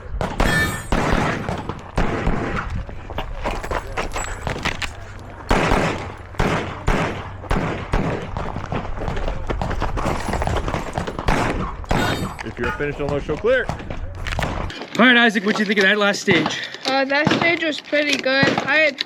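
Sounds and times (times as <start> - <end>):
pistol shots: 0.2 - 2.7, 5.4 - 8.9, 11.0 - 12.5.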